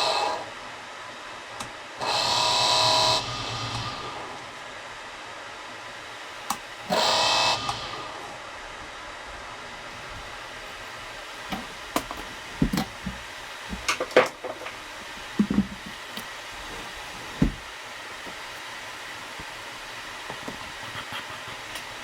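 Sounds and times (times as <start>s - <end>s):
fan hissing: 0.0s - 22.0s
tools and wood knocking: 11.5s - 16.3s.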